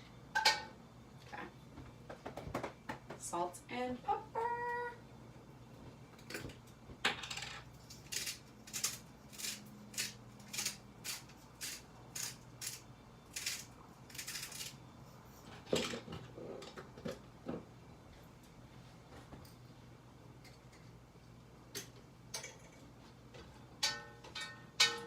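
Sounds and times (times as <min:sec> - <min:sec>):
pepper grinder grinding: 0:07.2 - 0:14.8.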